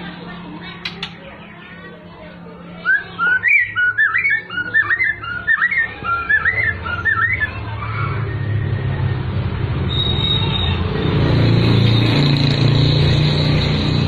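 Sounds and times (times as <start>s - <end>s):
bird singing whistled notes: 2.8s - 9.1s, 9.9s - 10.8s.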